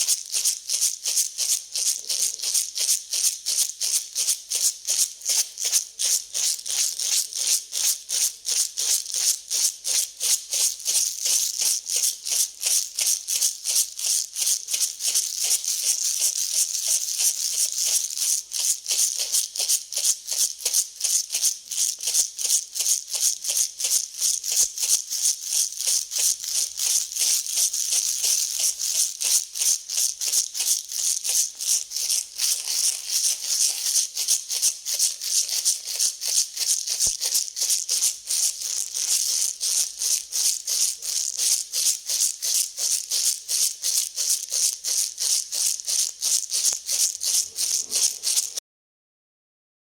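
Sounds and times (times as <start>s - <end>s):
dry grain rattling: 23.1s - 48.6s.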